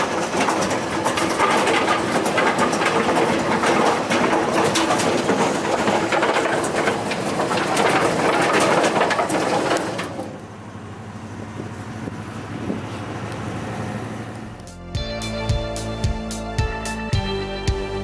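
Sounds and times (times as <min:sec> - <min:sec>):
wood chipper running: 0:00.0 - 0:10.9.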